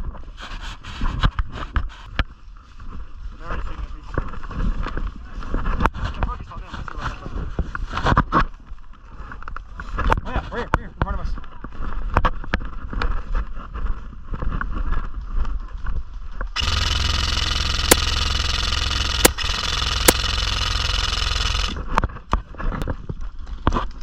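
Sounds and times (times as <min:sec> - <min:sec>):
airsoft gun snaps: 0:16.6 - 0:21.8.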